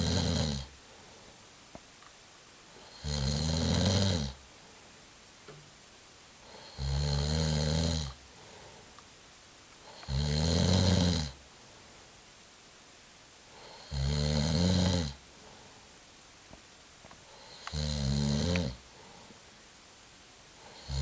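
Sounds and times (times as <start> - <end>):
person snoring loudly: 0.0 - 0.7, 2.8 - 4.4, 6.4 - 8.2, 9.9 - 11.4, 13.6 - 15.2, 17.4 - 18.8, 20.7 - 21.0
quiet breathing: 0.0 - 1.8, 2.6 - 5.2, 6.4 - 12.4, 13.4 - 21.0.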